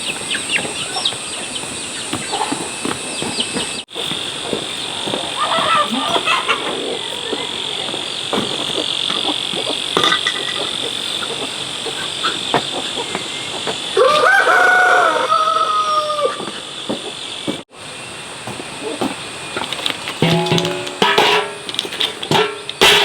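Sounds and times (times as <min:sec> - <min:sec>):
rooster crowing: 0:04.9 - 0:08.3, 0:10.6 - 0:16.8.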